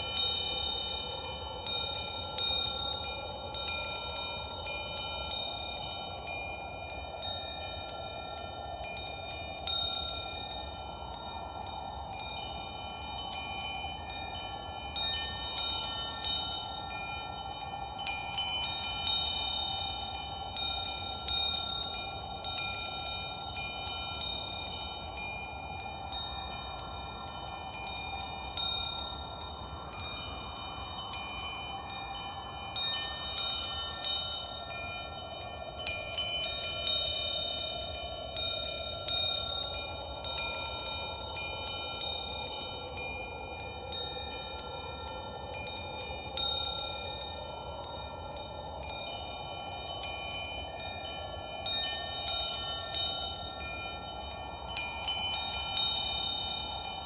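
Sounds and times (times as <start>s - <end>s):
wind chimes ringing: 0.0s - 57.0s.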